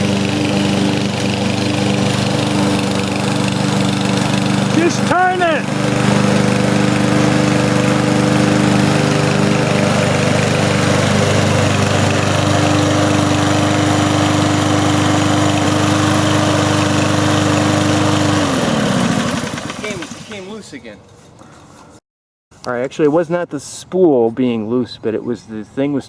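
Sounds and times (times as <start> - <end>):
lawn mower engine running: 0.0 - 20.7.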